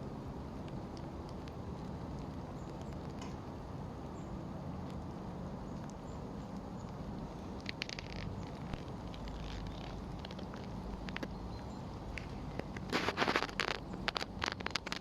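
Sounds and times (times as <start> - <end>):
rain falling on puddles: 6.6 - 15.0.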